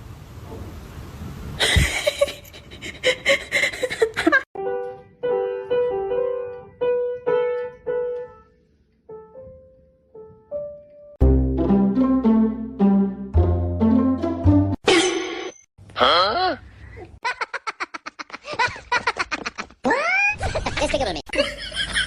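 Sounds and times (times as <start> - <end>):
piano notes: 4.6 - 14.8.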